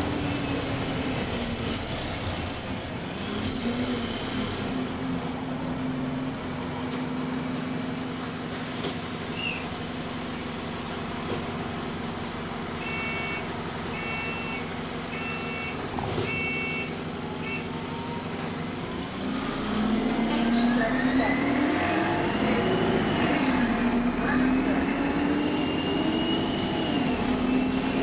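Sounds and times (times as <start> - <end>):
bus diesel engine running: 0.0 - 28.0
two-tone electronic warning beeps: 12.8 - 17.7.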